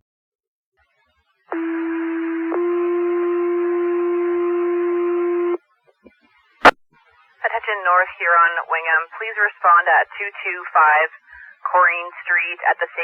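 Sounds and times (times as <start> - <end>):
pager tone over radio: 1.5 - 5.6.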